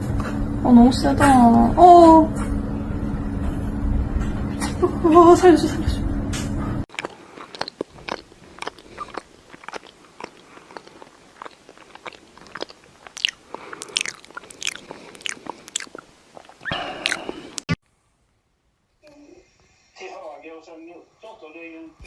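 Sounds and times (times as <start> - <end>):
crunchy chewing: 6.9 - 17.7.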